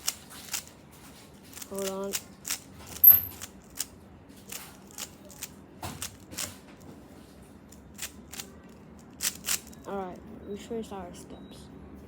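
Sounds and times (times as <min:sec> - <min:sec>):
speed cube clicking: 0:00.0 - 0:00.7, 0:01.5 - 0:03.9, 0:04.8 - 0:06.5, 0:08.0 - 0:08.5, 0:09.1 - 0:09.8.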